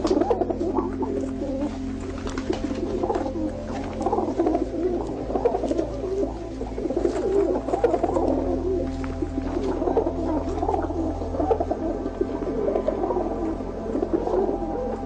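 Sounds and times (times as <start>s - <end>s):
birds calling: 0.0s - 15.0s
steady low hum: 0.0s - 15.0s.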